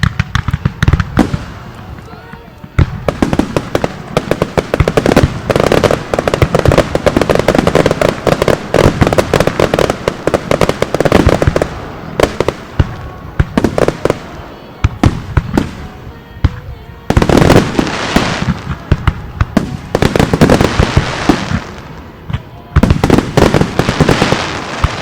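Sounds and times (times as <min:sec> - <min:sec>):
fireworks booming and crackling: 0:00.0 - 0:25.0.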